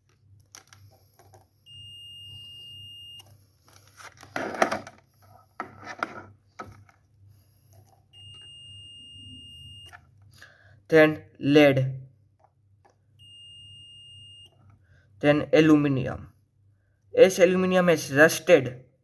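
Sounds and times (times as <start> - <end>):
high-pitched multimeter beeps: 1.6 - 3.3, 8.1 - 10.0, 13.2 - 14.6.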